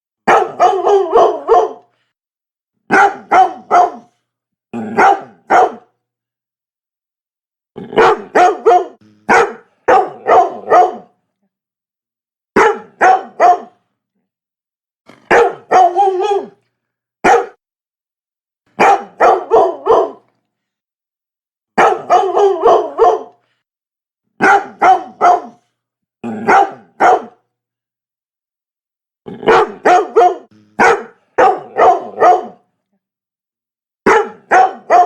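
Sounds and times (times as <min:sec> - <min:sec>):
dog barking: 0:00.2 - 0:01.9, 0:02.9 - 0:04.2, 0:04.9 - 0:06.0, 0:07.9 - 0:11.2, 0:12.6 - 0:13.8, 0:15.1 - 0:16.6, 0:17.2 - 0:17.6, 0:18.8 - 0:20.3, 0:21.8 - 0:23.4, 0:24.4 - 0:25.7, 0:26.4 - 0:27.4, 0:29.4 - 0:32.7, 0:34.1 - 0:35.0.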